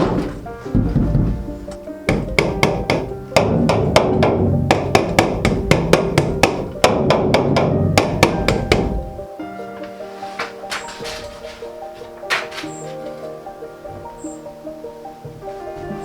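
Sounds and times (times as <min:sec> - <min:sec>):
sharp knocks: 0:00.0 - 0:09.2
background music: 0:00.0 - 0:16.0.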